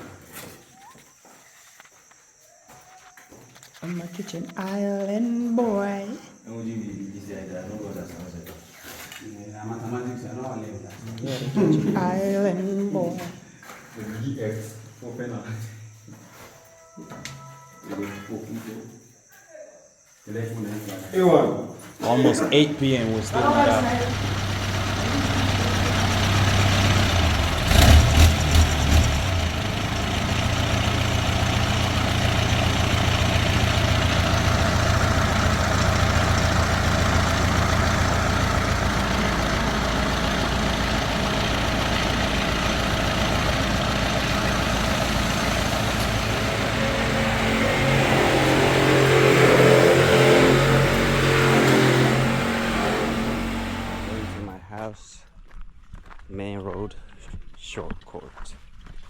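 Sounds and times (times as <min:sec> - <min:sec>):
engine running: 0:22.2 - 0:54.6.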